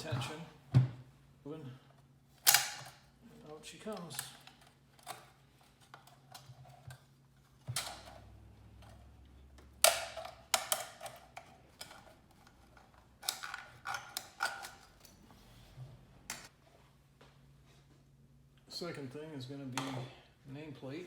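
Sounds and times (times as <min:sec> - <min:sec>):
metal parts clicking and knocking: 0:09.8 - 0:12.2.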